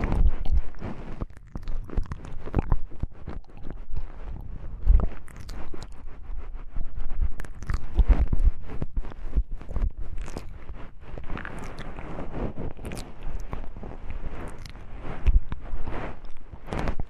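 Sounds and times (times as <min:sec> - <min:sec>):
soft rustling: 0:00.0 - 0:17.0.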